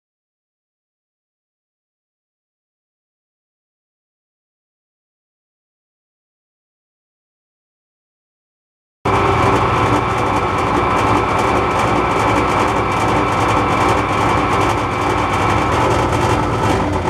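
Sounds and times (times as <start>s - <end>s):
metal lathe motor drone and whine: 9.1s - 17.0s.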